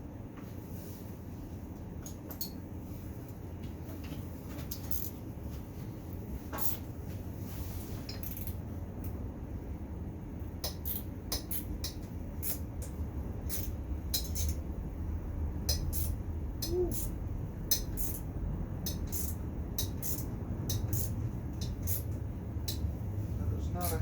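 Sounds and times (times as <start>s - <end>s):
steady low hum: 0.0s - 24.0s
metallic clicks of hand tools: 10.6s - 14.6s, 17.7s - 18.2s, 18.8s - 22.9s.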